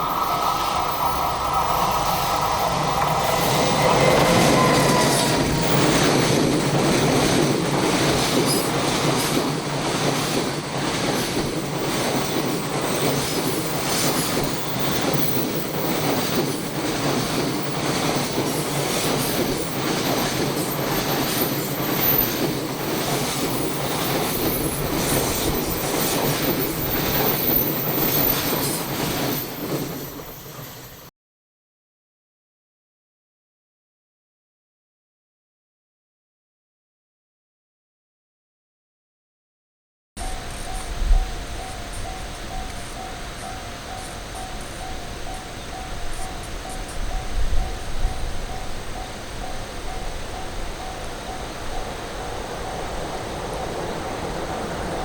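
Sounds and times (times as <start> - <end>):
level crossing warning bell: 0.0 - 31.1, 40.2 - 55.0
train wheels clattering: 0.0 - 31.1.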